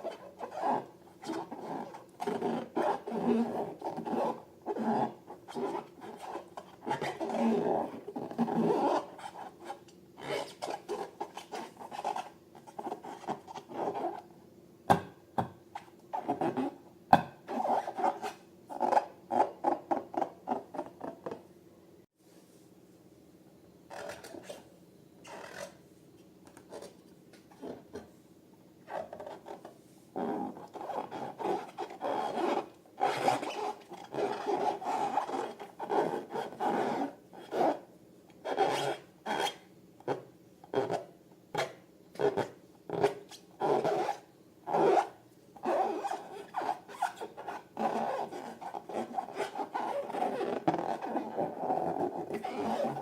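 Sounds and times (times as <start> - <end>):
balloons squeaking when rubbed: 0.0 - 14.2, 17.5 - 20.9, 28.9 - 37.8, 41.6 - 53.0.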